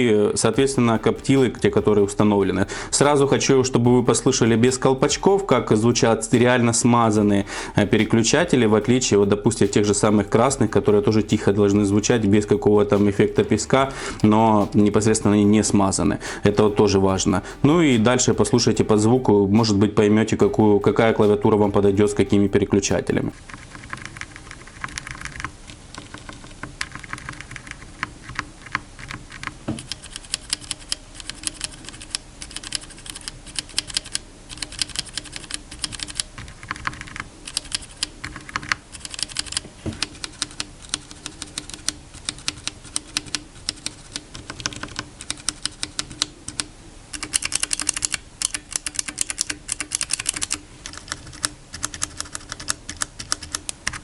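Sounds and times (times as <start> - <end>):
keyboard switches clicking: 36.9 - 54.0.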